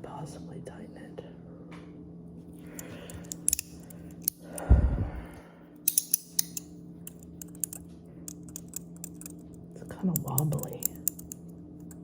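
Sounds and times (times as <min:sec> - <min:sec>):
metallic clicks of fidget slider: 0:02.8 - 0:04.4, 0:05.9 - 0:09.4, 0:10.2 - 0:12.0.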